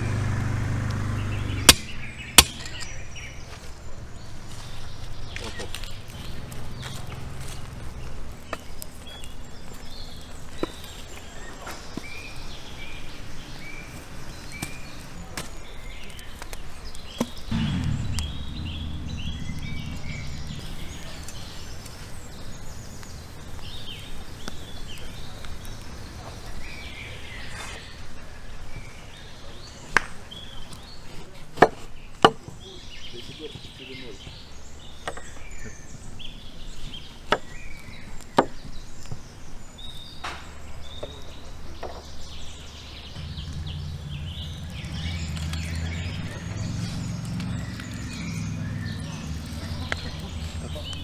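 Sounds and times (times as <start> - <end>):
birds chirping: 0.0 - 51.0
low call: 17.2 - 28.0, 43.2 - 51.0.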